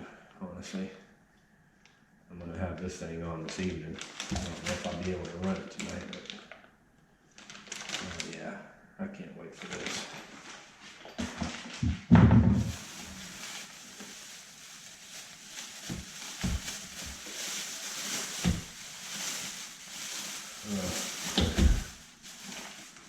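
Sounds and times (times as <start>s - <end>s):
packaging rustling: 3.5s - 6.6s, 7.3s - 8.4s, 12.6s - 23.0s
heavy thump: 11.9s - 12.7s.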